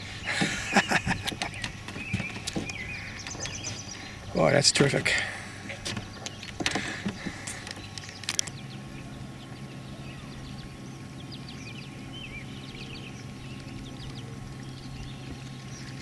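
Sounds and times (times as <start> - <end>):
steady low hum: 0.0 - 16.0
knocks and clicks of gear: 0.2 - 8.7.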